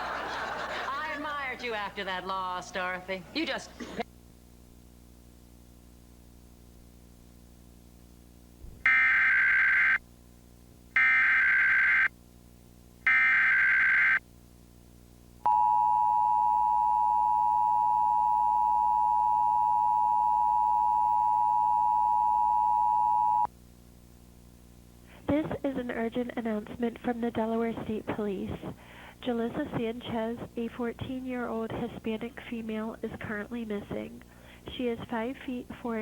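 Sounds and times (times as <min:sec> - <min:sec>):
two-tone attention signal: 0:15.5 - 0:23.5.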